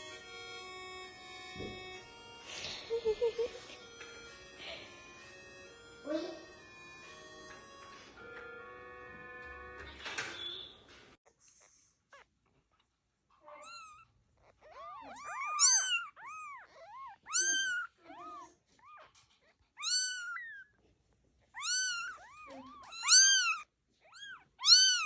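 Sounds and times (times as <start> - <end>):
kittens meowing: 13.4 - 20.8, 21.5 - 25.0.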